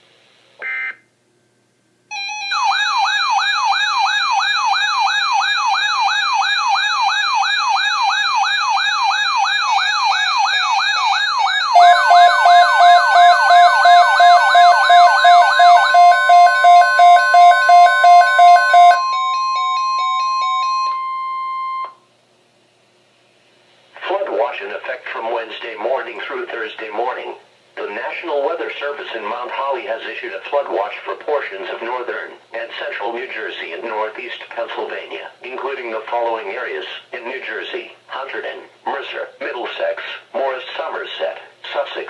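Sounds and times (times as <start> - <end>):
warbling siren: 2.1 - 21.9
steady warning tone: 10.6 - 22.0
rapid pulsing beeps: 11.7 - 20.6.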